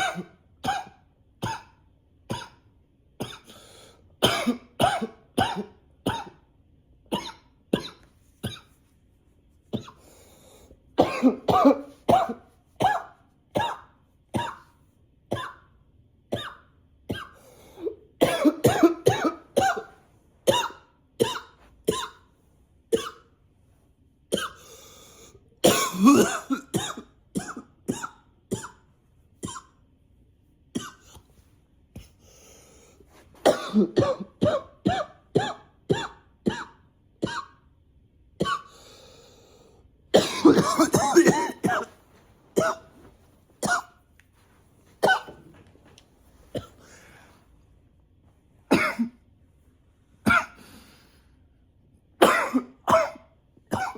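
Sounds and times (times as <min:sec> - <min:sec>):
man coughing: 0:00.0 - 0:02.6, 0:04.2 - 0:06.5, 0:11.0 - 0:14.7, 0:16.4 - 0:22.2, 0:25.6 - 0:28.8, 0:33.4 - 0:37.6, 0:40.1 - 0:42.0, 0:42.6 - 0:44.0, 0:45.0 - 0:45.6, 0:46.5 - 0:47.0, 0:48.7 - 0:49.2, 0:50.2 - 0:50.7, 0:52.2 - 0:53.9.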